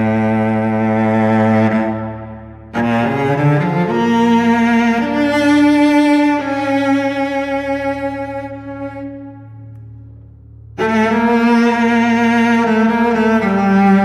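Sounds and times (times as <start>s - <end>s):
cello bowed notes: 0.0s - 14.0s.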